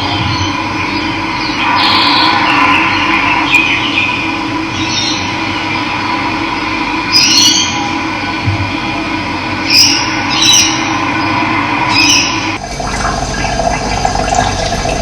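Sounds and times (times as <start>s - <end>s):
small birds chirping: 9.6s - 12.6s
running water: 10.1s - 15.0s.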